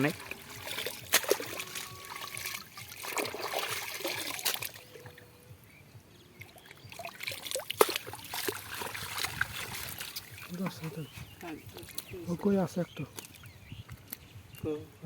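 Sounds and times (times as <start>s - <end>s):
sharp splash: 0.0s - 5.0s, 6.9s - 10.7s
water splashing and trickling: 0.0s - 14.9s.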